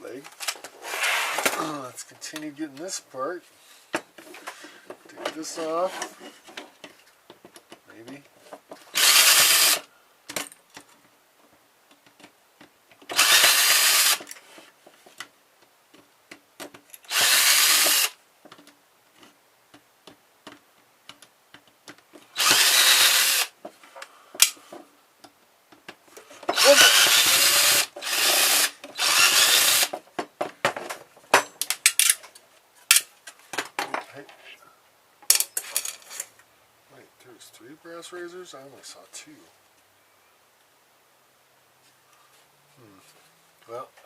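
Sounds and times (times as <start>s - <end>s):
power drill bursts: 8.9s - 9.9s, 13.1s - 14.3s, 17.1s - 18.2s, 22.3s - 23.6s, 26.5s - 29.9s.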